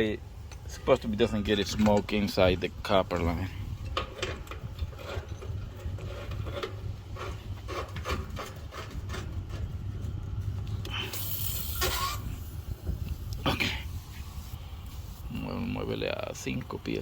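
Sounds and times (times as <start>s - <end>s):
tools scraping and clicking: 3.8s - 9.8s
gas hissing: 10.4s - 17.0s.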